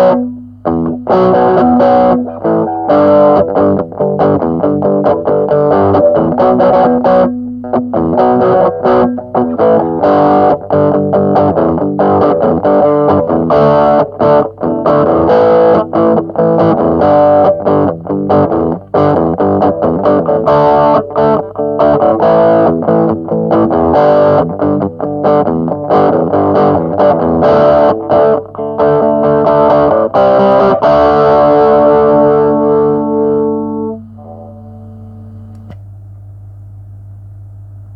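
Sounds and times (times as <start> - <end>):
distorted electric guitar riff: 0.0 - 35.8
low amp hum: 0.0 - 37.9.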